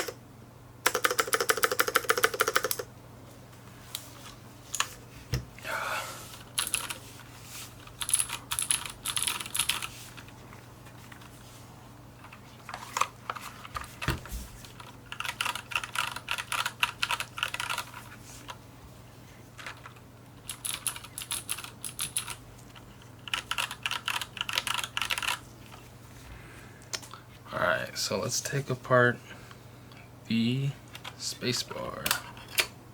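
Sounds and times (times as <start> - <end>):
mechanical keyboard typing: 0.8 - 2.9, 6.6 - 7.0, 7.9 - 9.9, 14.6 - 18.0, 19.7 - 22.4, 23.2 - 25.4.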